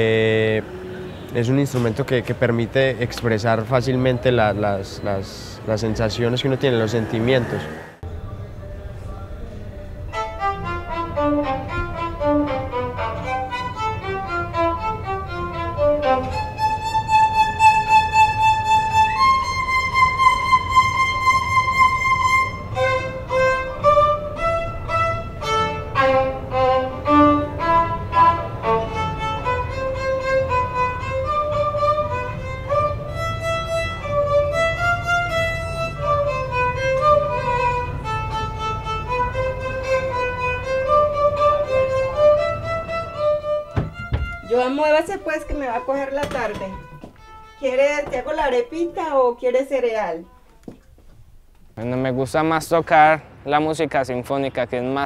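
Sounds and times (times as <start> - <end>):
violin playing: 10.0 - 49.3.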